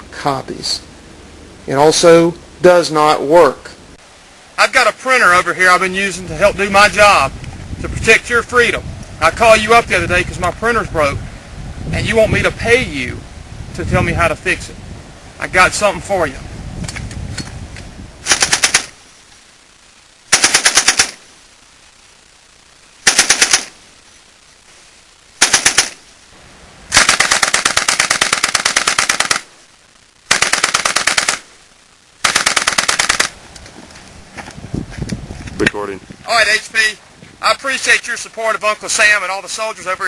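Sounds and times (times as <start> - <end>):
automatic gunfire bursts: 18.2 - 18.9, 20.3 - 21.2, 23.0 - 23.8, 25.4 - 26.0, 26.9 - 29.5, 30.3 - 31.5, 32.2 - 33.4.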